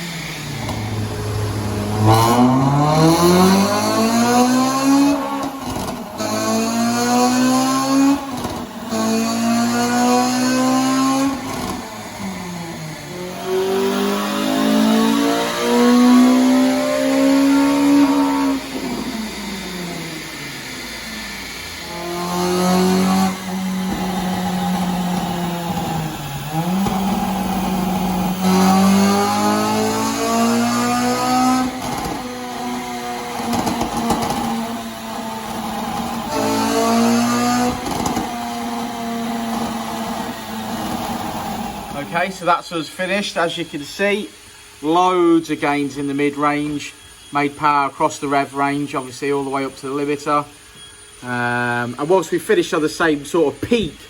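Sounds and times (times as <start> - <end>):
car engine revving hard: 0.0 - 42.3
exhaust crackles: 0.0 - 44.6.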